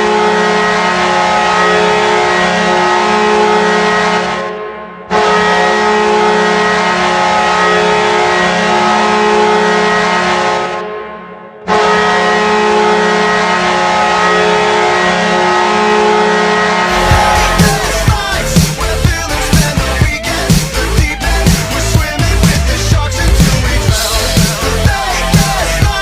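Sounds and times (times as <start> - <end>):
hockey goal horn blasts: 0.0 - 18.8.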